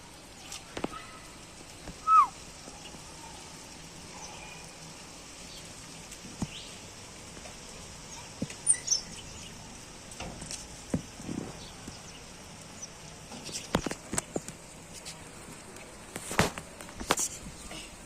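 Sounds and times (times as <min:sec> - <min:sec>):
rain hissing: 0:00.0 - 0:18.0
high bird chirps: 0:02.0 - 0:02.3, 0:08.6 - 0:09.5.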